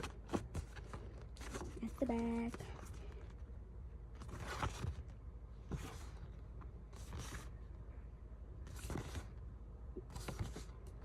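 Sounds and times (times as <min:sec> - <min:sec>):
paper and card rustling: 0:00.0 - 0:03.5, 0:04.2 - 0:07.6, 0:08.7 - 0:09.4, 0:10.0 - 0:11.0.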